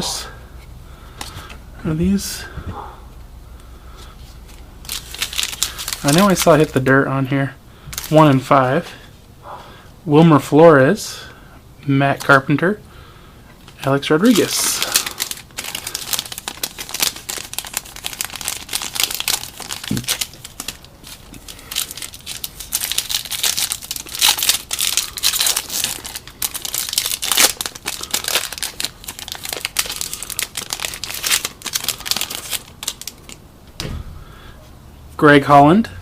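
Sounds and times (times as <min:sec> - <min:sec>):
foil wrapper crinkling and tearing: 0:04.8 - 0:06.9, 0:14.3 - 0:33.4.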